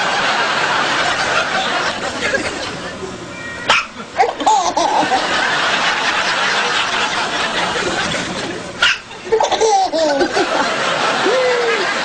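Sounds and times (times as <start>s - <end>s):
baby hiccup: 3.7s - 3.9s
baby laughing: 3.7s - 5.3s, 6.7s - 12.0s.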